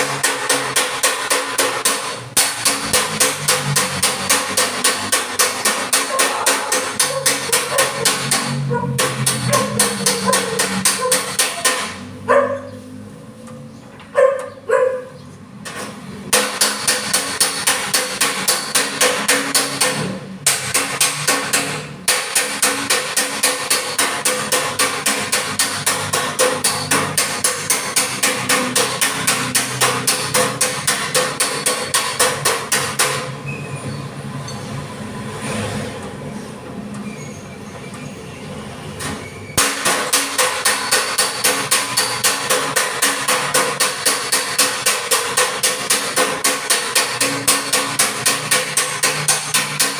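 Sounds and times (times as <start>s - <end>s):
hammer striking metal file: 0.0s - 12.2s, 15.7s - 33.4s, 39.0s - 49.9s
steady background noise: 0.0s - 49.9s
dog barking: 6.1s - 11.3s, 12.2s - 12.8s, 14.1s - 15.2s.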